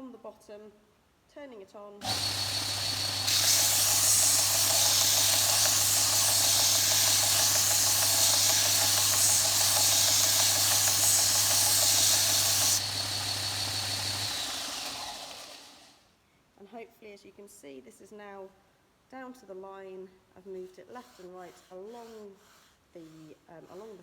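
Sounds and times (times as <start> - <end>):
wood grinding on belt sander: 2.0 - 15.9
belt sander motor hum: 2.0 - 16.0
motor winding down: 2.0 - 16.0.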